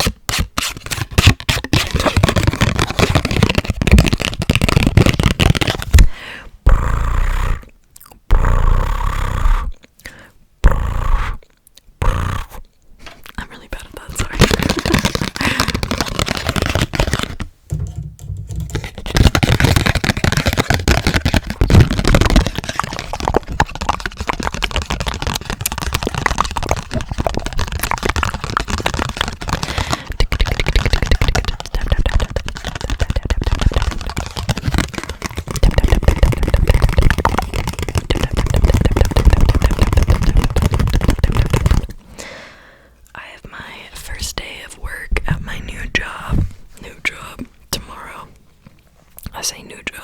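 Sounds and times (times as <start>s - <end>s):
fingers tapping on cards: 0.0s - 6.1s, 13.7s - 42.0s.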